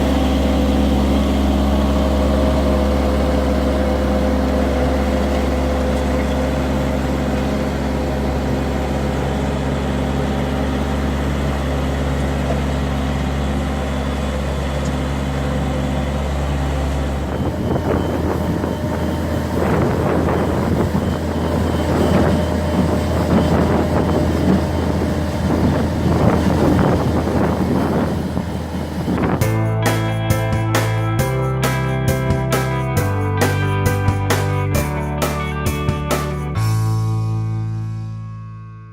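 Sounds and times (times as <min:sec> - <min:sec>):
forklift engine running: 0:00.0 - 0:37.6.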